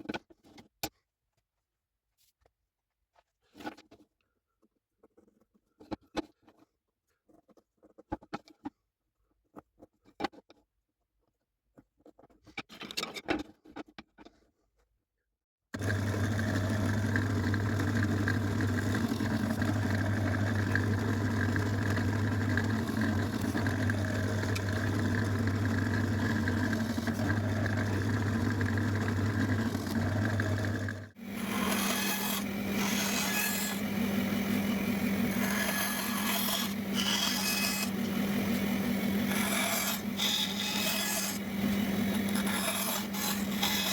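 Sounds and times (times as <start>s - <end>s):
woodworking power tool running: 15.8s - 43.9s.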